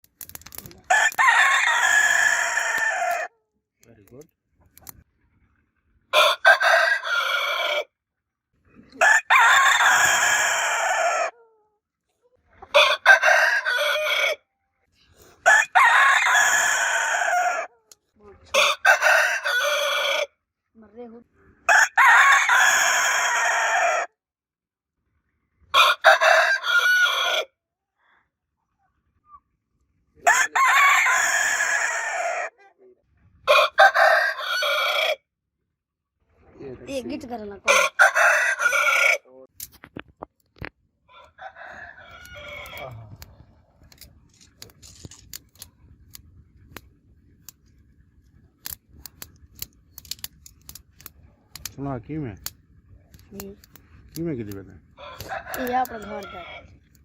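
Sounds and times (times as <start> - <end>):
rooster crowing: 0.9 - 3.4, 6.1 - 7.9, 9.0 - 11.6, 12.7 - 14.4, 15.4 - 17.8, 18.5 - 20.3, 21.7 - 24.1, 25.7 - 27.5, 30.2 - 32.5, 33.4 - 35.2, 37.7 - 39.2, 41.1 - 43.4, 54.9 - 56.7.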